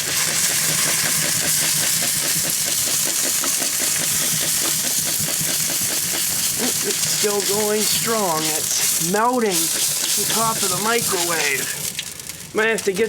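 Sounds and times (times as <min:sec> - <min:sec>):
hiss of escaping propellant: 0:00.0 - 0:12.0
fire crackling and sputtering: 0:00.0 - 0:13.0.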